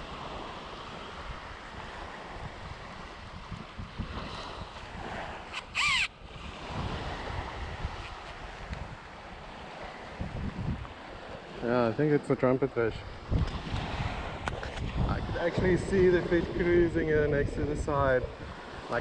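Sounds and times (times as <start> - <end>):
wind on microphone: 0.0 - 11.6, 12.9 - 19.0
surf washing: 0.0 - 19.0
harsh bird call: 5.5 - 6.1.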